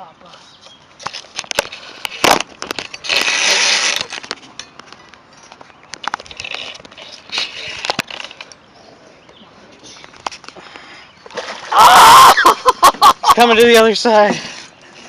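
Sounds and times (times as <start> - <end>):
rushing scrape on microphone: 2.9 - 4.3.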